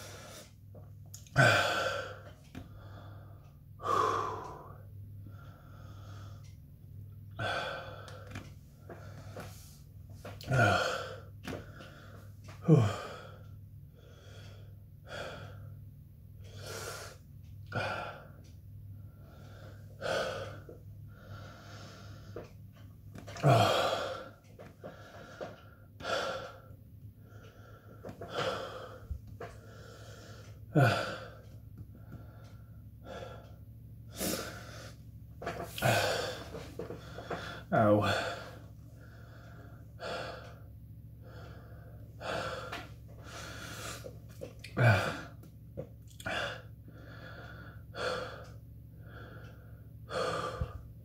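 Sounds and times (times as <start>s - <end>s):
man gasping breaths: 1.2s - 6.6s, 7.4s - 15.8s, 16.4s - 22.6s, 23.2s - 45.5s, 46.1s - 51.0s
man groaning: 10.4s - 11.2s, 12.6s - 13.3s, 23.4s - 24.2s, 44.6s - 45.4s.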